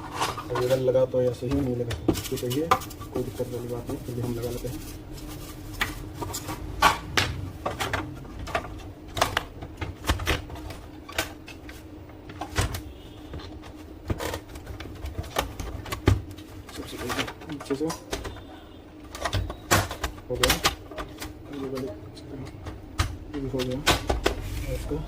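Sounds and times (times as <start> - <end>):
faint steady hum: 0.0 - 25.0.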